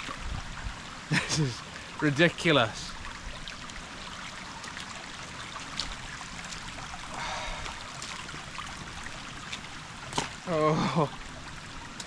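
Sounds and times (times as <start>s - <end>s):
stream running: 0.0s - 12.0s.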